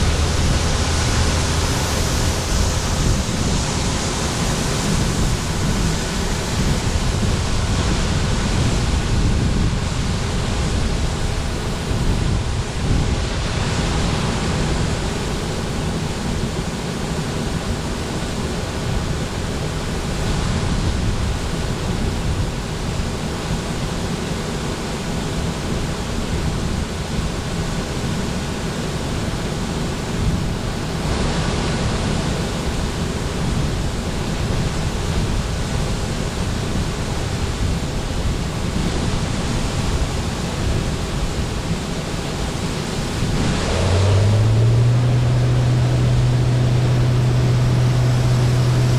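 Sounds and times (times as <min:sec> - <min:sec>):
combine harvester running: 0:00.0 - 0:09.0, 0:39.4 - 0:48.9
faint steady whine: 0:00.0 - 0:09.0.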